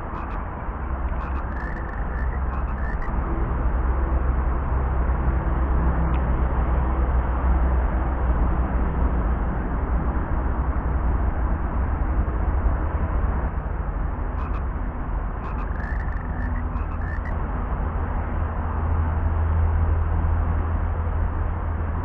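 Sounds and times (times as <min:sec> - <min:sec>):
frogs croaking and chirping: 0:00.0 - 0:03.2, 0:14.3 - 0:17.4
steady low rumble: 0:00.0 - 0:22.0.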